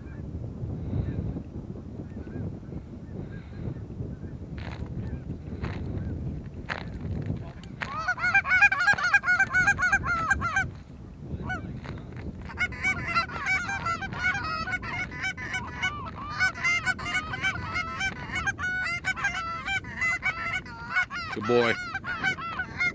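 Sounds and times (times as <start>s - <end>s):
goose honking: 7.8s - 10.7s, 12.5s - 22.9s.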